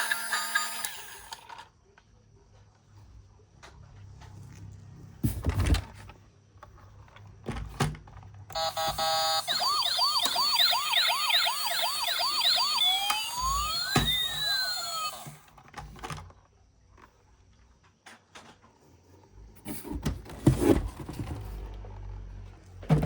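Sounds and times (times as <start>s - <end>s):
toy electronic siren: 0.0s - 1.4s, 8.6s - 15.4s.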